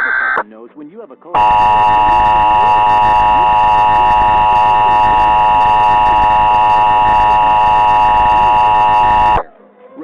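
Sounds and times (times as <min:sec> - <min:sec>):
faint television speech: 0:00.0 - 0:01.4, 0:09.4 - 0:10.0
two-tone alarm: 0:01.4 - 0:09.5.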